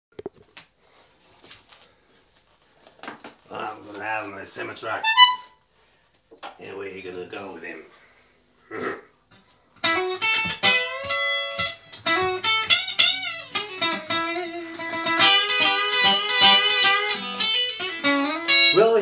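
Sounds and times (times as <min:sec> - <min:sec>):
guitar single notes with bends: 0:09.8 - 0:19.0.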